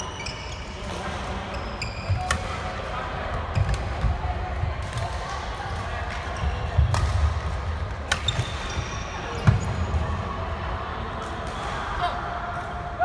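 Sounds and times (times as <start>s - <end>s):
shoe squeaks: 0.0s - 0.8s, 1.5s - 2.4s
racket hitting shuttlecock: 6.9s - 8.8s.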